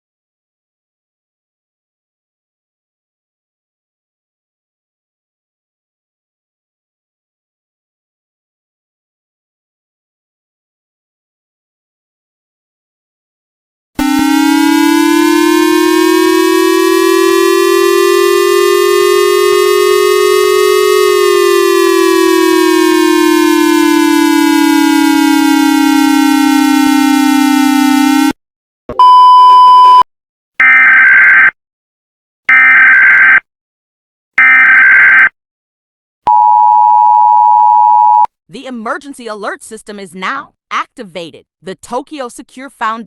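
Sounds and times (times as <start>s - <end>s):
synthetic siren wail: 14.0s - 28.4s, 30.6s - 31.5s, 32.5s - 33.4s, 34.4s - 35.3s
short steady beep: 29.0s - 30.0s, 36.3s - 38.3s.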